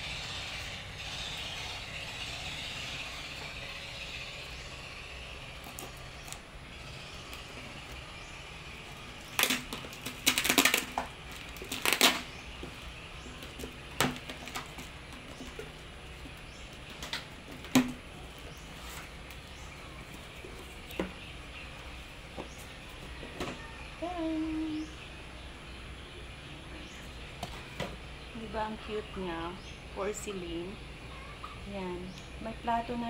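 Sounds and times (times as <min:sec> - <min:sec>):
packaging crinkling: 0:09.2 - 0:17.6.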